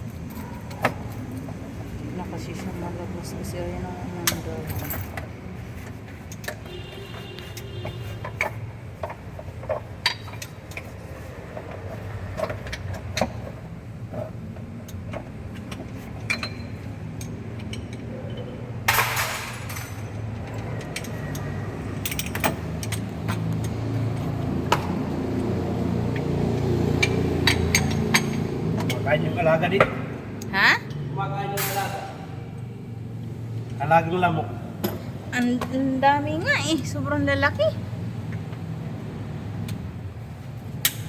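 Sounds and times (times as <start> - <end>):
metal tools clinking: 4.3 - 6.7, 16.2 - 24.3, 30.9 - 32.1.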